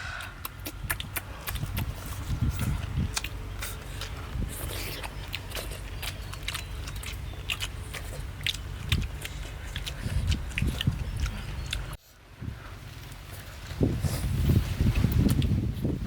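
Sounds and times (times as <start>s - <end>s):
person chewing crunchy food: 0.0s - 12.0s.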